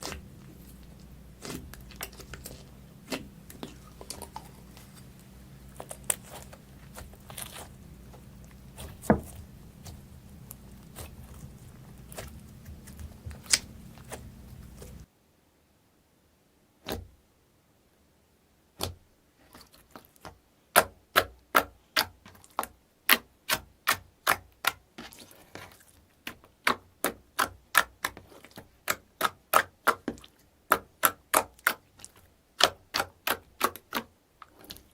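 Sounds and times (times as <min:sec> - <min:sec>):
slime clicking and popping: 0:00.0 - 0:15.0.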